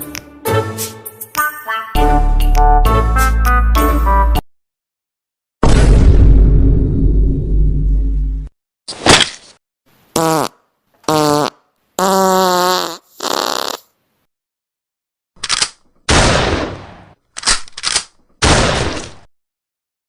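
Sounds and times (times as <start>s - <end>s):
noisy crash bursts: 5.6s - 7.9s
buzzing cartoon fart: 10.2s - 13.9s.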